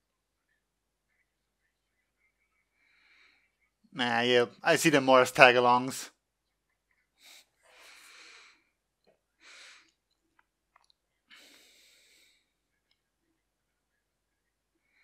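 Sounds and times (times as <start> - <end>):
faint breaths near microphone: 1.1 - 3.9, 6.9 - 8.8, 9.4 - 10.1, 11.2 - 13.0, 14.7 - 15.0.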